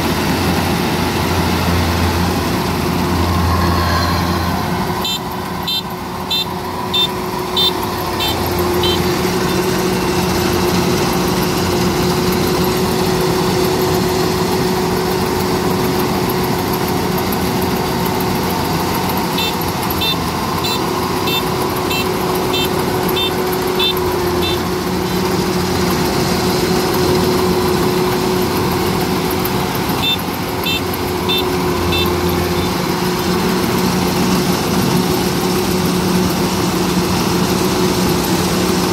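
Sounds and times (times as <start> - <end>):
combine harvester engine drone: 0.0 - 38.9
rapid electronic beeping: 4.9 - 10.1, 19.2 - 24.7, 30.0 - 32.8.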